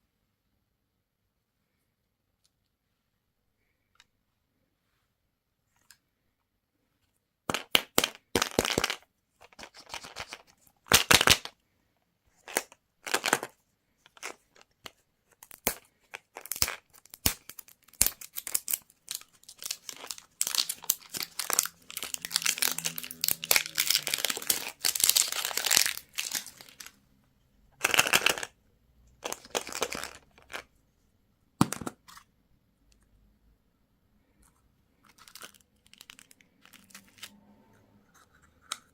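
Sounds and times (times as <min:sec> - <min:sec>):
wrappers crinkling and tearing: 0:16.4 - 0:26.9.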